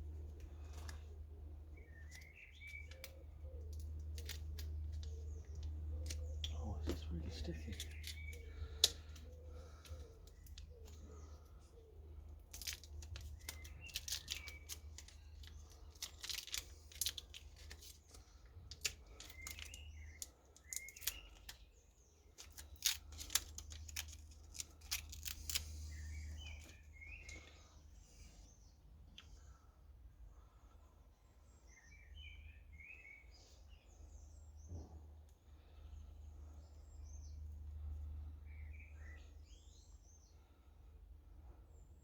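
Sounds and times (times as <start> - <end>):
low steady hum: 0.0 - 42.0
small birds chirping: 0.0 - 42.0.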